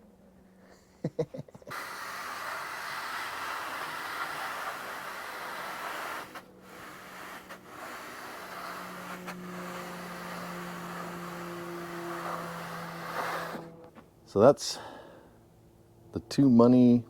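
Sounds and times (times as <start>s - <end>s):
hiss: 1.7s - 13.9s
engine running with low hum: 4.6s - 17.0s.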